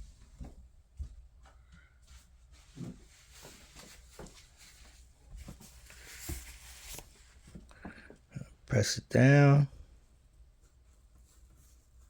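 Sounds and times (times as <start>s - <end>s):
fabric rustling: 2.1s - 7.7s.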